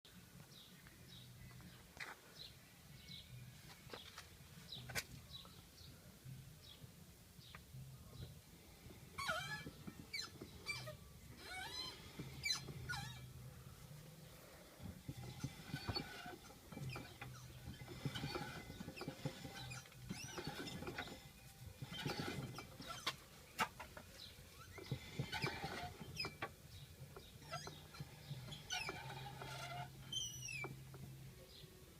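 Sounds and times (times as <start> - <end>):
wheel hub scraping: 8.2 - 31.6
propeller shaft squeaking: 8.6 - 31.2.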